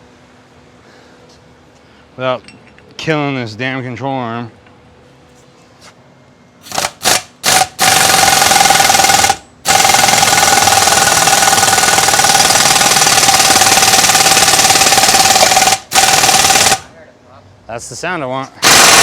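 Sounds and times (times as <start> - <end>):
pneumatic impact wrench hammering: 6.6 - 16.9, 18.6 - 19.0.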